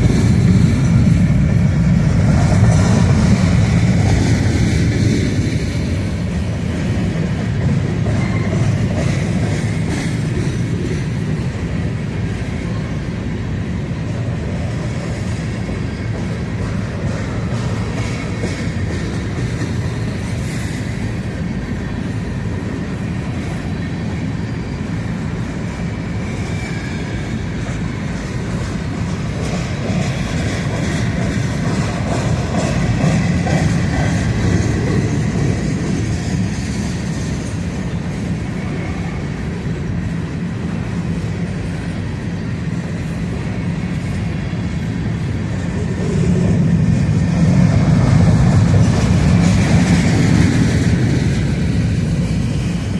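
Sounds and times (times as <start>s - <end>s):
train wheels clattering over rails: 0.0s - 52.9s
faint high wheel squeals: 21.7s - 28.5s.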